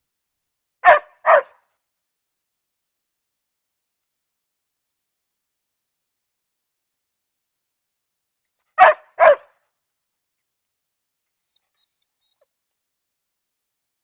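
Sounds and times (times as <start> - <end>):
dog barking: 0.8 - 1.6, 8.8 - 9.6.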